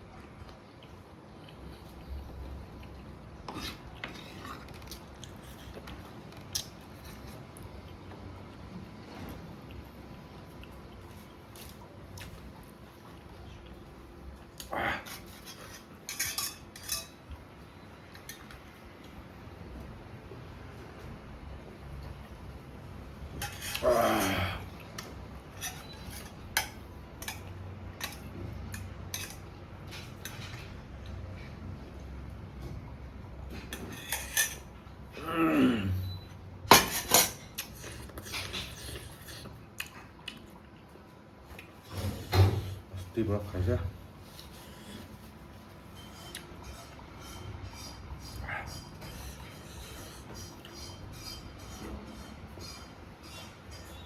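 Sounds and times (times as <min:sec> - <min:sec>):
utensils scraping a bowl: 0:15.0 - 0:17.2, 0:25.5 - 0:27.4, 0:45.9 - 0:54.0.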